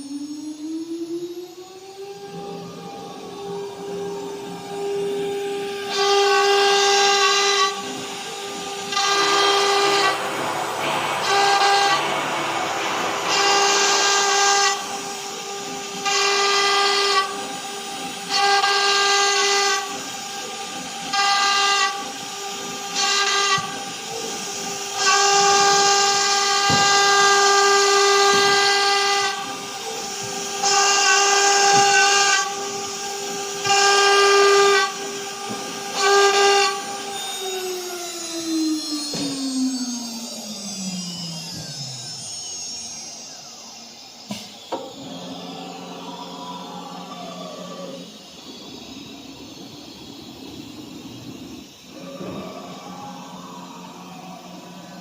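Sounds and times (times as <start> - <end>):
router spindle whining: 0.0 - 55.0.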